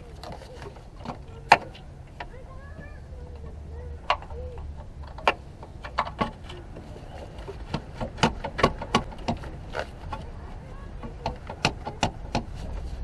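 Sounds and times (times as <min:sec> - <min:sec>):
hand tools clicking on bolts: 0:07.4 - 0:10.4.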